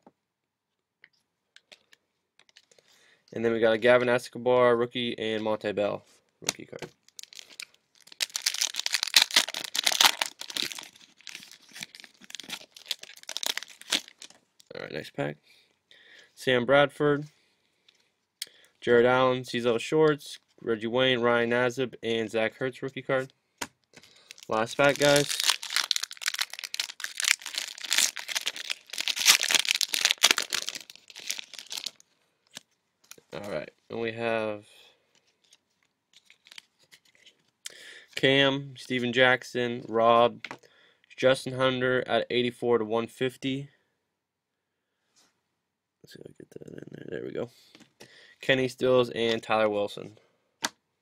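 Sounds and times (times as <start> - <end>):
wrapper crinkling and tearing: 7.0 - 14.7, 24.1 - 33.2, 35.2 - 37.4.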